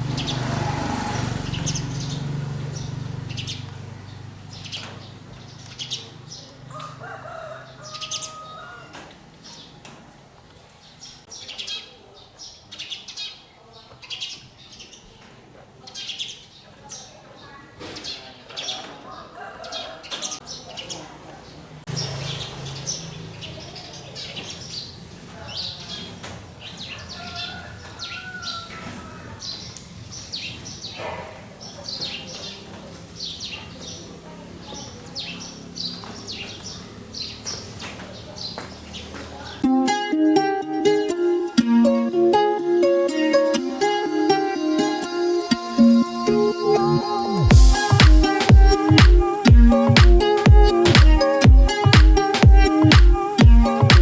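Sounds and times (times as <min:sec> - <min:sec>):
small birds chirping: 0:00.0 - 0:39.6.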